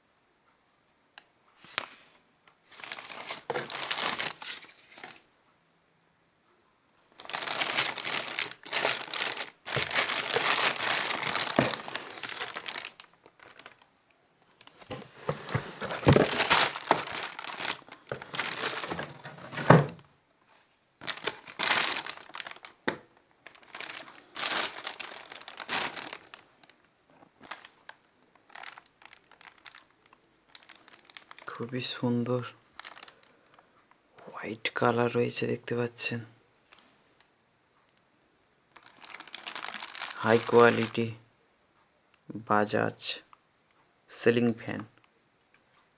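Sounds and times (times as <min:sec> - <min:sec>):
packaging crinkling and rustling: 0:02.7 - 0:05.3, 0:07.1 - 0:20.0, 0:21.0 - 0:33.9, 0:38.7 - 0:41.2.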